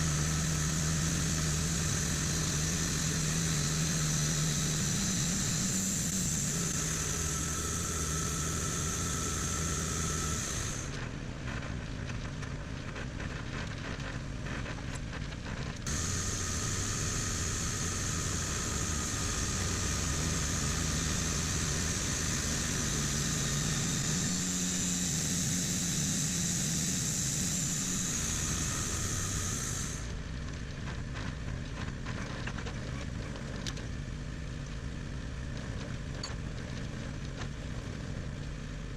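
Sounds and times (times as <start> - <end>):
high hiss: 0.0 - 11.0, 15.9 - 30.1
engine running: 0.0 - 38.9.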